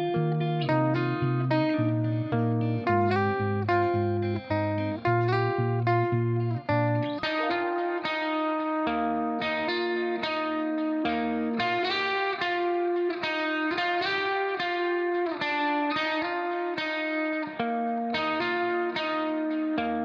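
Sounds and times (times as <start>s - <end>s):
plucked string melody: 0.0s - 20.0s.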